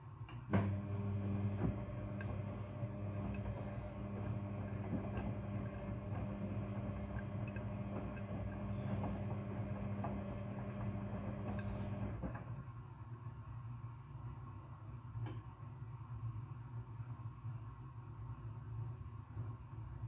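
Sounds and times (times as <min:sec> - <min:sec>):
washing machine motor hum: 0:00.4 - 0:12.6.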